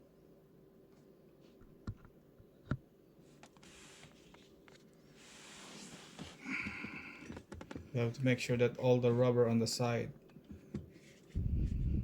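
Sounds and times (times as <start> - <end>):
soft rubbing: 3.2 - 6.4.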